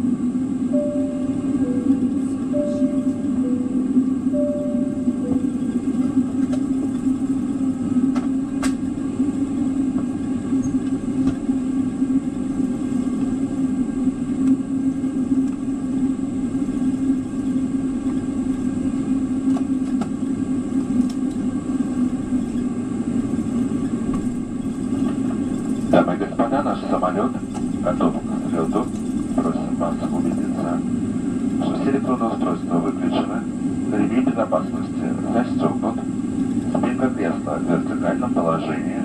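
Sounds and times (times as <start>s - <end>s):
aircraft cabin hum: 0.0s - 39.0s
two-note falling chime: 0.8s - 6.4s.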